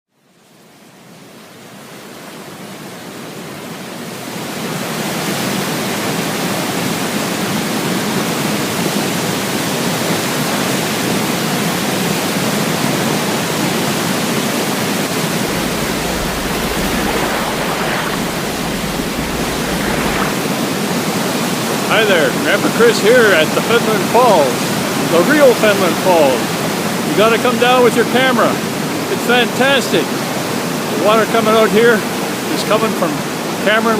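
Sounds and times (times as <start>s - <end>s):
waterfall rushing: 13.6s - 27.0s.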